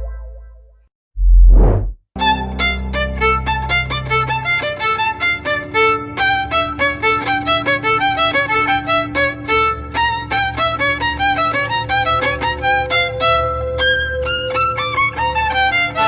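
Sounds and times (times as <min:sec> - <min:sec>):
fast violin tune: 0:02.2 - 0:16.0.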